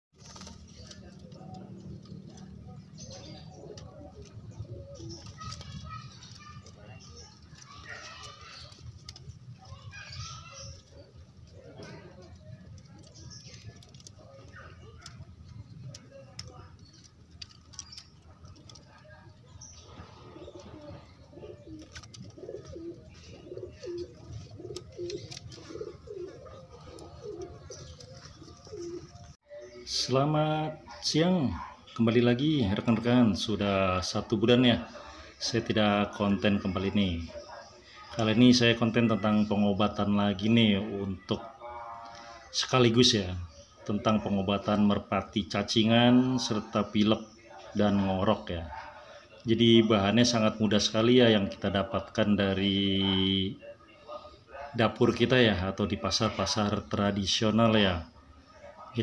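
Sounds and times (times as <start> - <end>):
pigeons cooing: 0.2 - 29.9.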